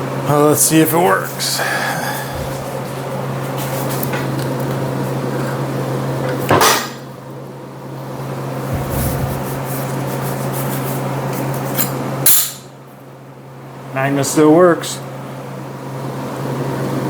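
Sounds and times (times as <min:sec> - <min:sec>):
steady low hum: 0:00.0 - 0:03.5, 0:07.5 - 0:10.9.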